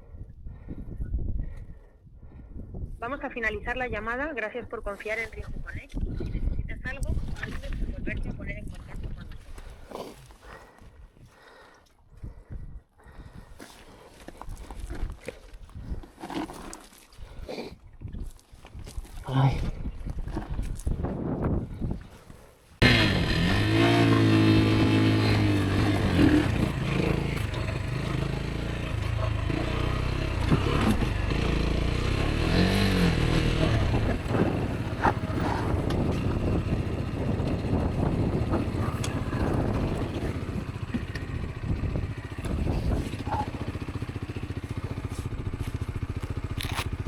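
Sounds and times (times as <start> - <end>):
motorcycle engine revving: 22.8 - 47.0.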